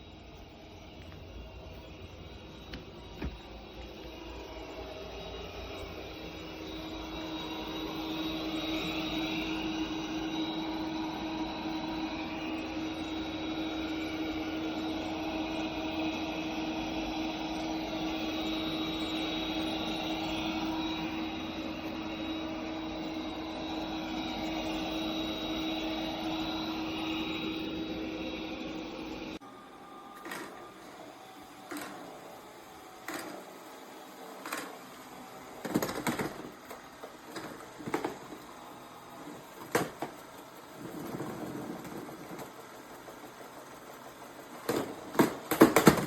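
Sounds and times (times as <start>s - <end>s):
robot vacuum running: 0.0s - 46.0s.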